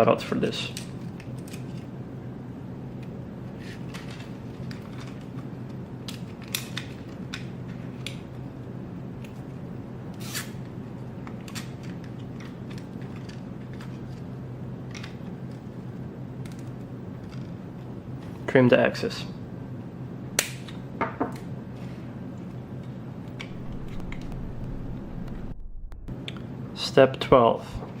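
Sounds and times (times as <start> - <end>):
steady low hum: 22.1 - 28.0.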